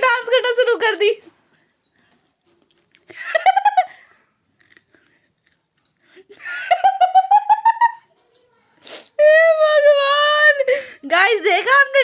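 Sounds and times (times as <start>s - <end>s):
woman giggling: 3.1s - 4.1s, 6.3s - 8.1s.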